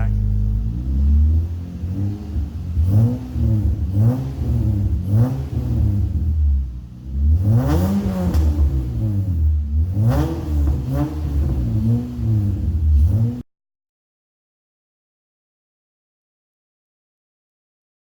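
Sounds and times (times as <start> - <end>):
car engine revving: 0.0 - 13.4.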